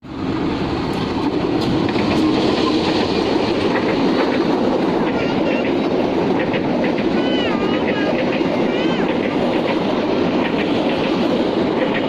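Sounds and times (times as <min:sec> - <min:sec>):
train wheels rumbling on rails: 0:00.0 - 0:12.0
wheels clicking over rail joints: 0:00.8 - 0:12.0.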